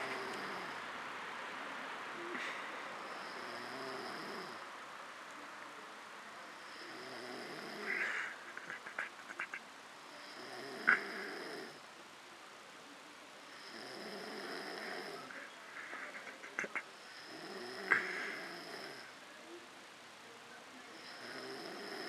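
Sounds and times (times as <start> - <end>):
person snoring: 3.2 - 4.6, 6.6 - 8.4, 10.2 - 11.8, 17.1 - 19.1.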